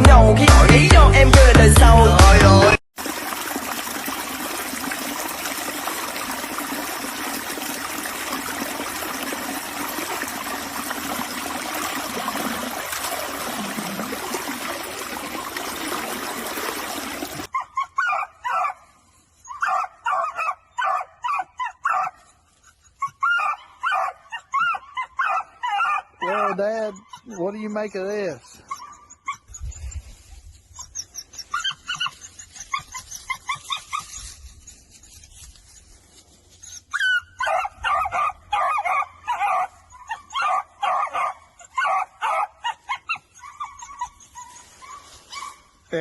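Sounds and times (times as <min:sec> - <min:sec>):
dog barking: 0:17.5 - 0:18.8, 0:19.5 - 0:22.2, 0:23.2 - 0:27.4, 0:37.4 - 0:45.7.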